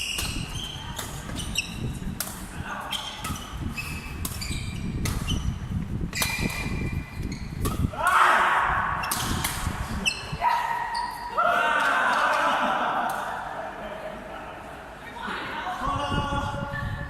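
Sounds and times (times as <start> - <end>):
shoe squeaks on court: 0.0 - 2.0, 2.9 - 7.8.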